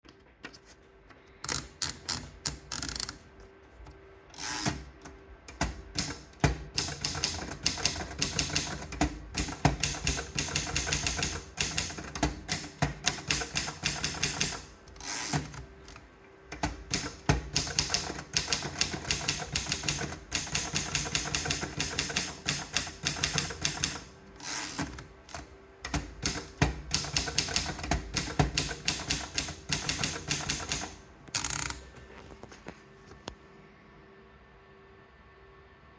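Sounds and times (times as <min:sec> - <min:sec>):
typewriter key strikes: 0:05.5 - 0:14.7, 0:16.6 - 0:24.1, 0:25.9 - 0:31.0.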